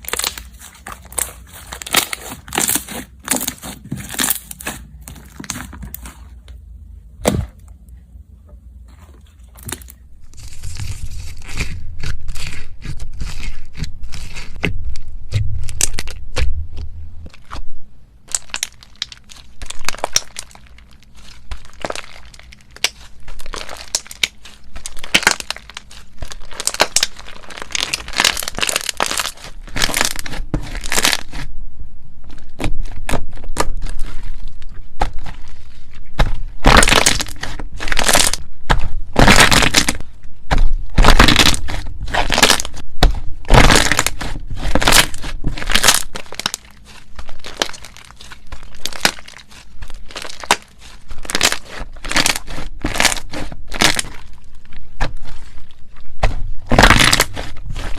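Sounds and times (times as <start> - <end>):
ice crunching and cracking: 0.0 - 6.3, 18.3 - 31.4, 36.2 - 57.9.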